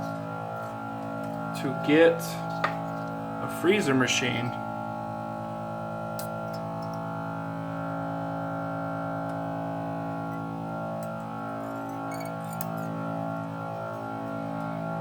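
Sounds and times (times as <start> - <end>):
sustained synthesizer tones: 0.0 - 15.0.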